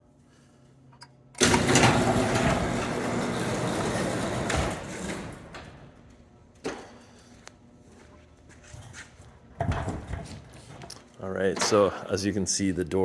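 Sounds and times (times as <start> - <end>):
garage door opener running: 1.0 - 7.4.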